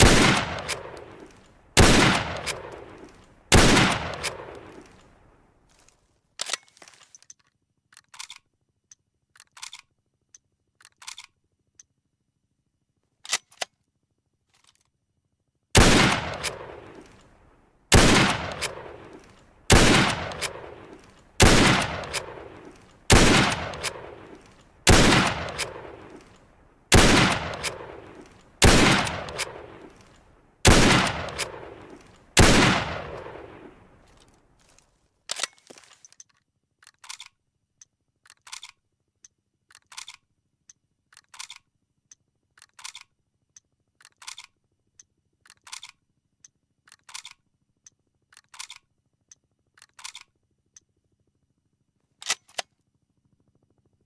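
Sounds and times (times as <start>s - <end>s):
rifle shots echoing: 0.0s - 5.0s, 15.8s - 17.3s, 17.9s - 34.3s
faint mechanical clicks: 2.2s - 12.1s, 16.1s - 17.6s, 18.2s - 30.4s, 31.0s - 51.2s.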